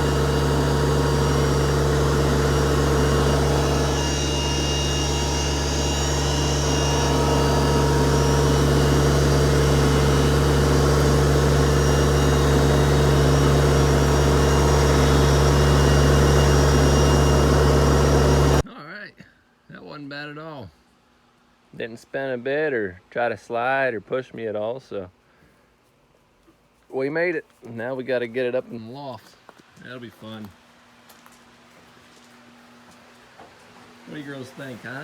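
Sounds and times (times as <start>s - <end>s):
tractor diesel engine running: 0.0s - 18.6s.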